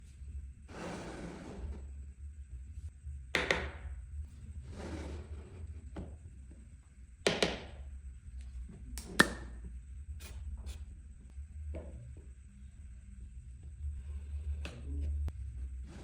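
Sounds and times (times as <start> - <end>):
low steady hum: 0.0 - 16.0
wood and tools knocking: 3.4 - 3.9, 7.3 - 7.8.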